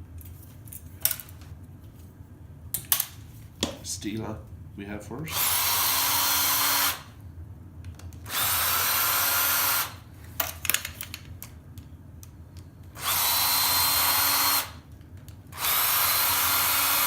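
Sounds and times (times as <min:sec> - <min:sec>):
electric screwdriver running: 0:05.3 - 0:07.1, 0:08.3 - 0:10.0, 0:13.0 - 0:14.8, 0:15.6 - 0:17.0.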